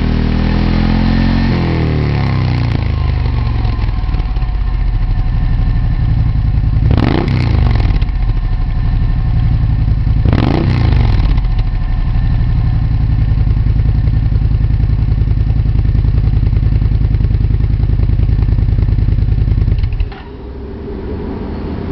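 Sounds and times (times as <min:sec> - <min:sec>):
motorcycle engine idling: 0:00.0 - 0:21.0
engine throttle blips: 0:17.2 - 0:21.9.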